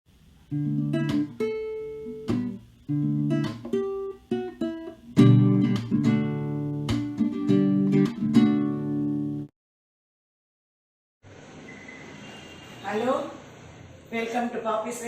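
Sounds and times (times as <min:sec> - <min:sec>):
acoustic guitar music: 0:00.5 - 0:09.5.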